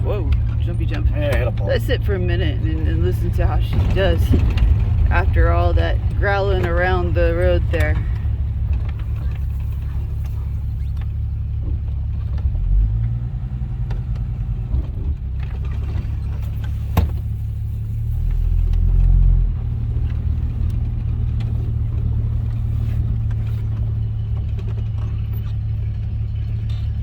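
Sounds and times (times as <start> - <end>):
car engine idling: 0.0 - 27.0.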